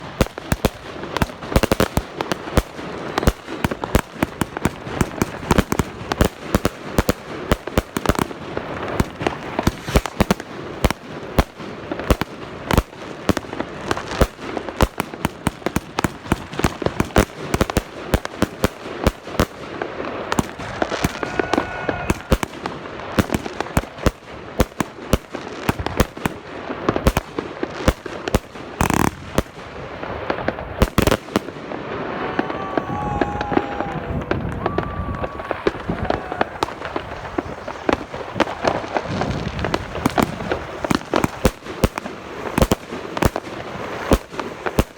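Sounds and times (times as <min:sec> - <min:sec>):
fireworks bangs and crackles: 0:00.0 - 0:44.9
loud firework blast: 0:19.4 - 0:24.2, 0:28.7 - 0:44.9.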